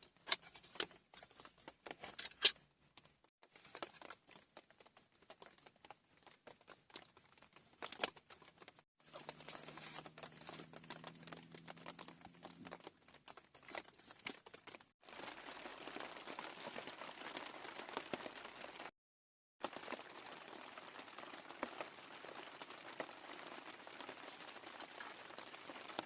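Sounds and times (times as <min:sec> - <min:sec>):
rain pattering on tent fabric: 0:03.4 - 0:18.9, 0:19.6 - 0:26.0
tent fabric crinkling: 0:09.0 - 0:18.9, 0:19.6 - 0:26.0.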